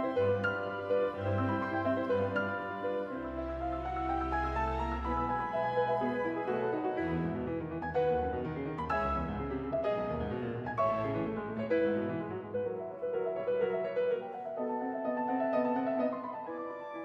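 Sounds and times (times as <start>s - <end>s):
low bowed strings: 0.0s - 12.2s
piano classical melody: 0.0s - 17.0s.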